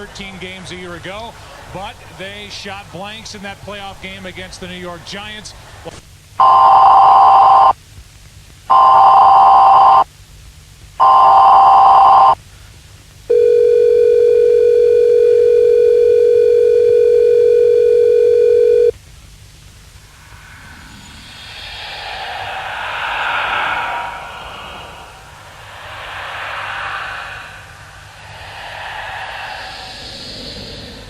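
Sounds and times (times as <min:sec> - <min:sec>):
harsh alert header bursts: 0:06.4 - 0:07.7, 0:08.7 - 0:10.0, 0:11.0 - 0:12.4
long steady buzzing tone: 0:06.4 - 0:07.8, 0:08.7 - 0:10.0, 0:11.0 - 0:12.4, 0:13.3 - 0:21.3.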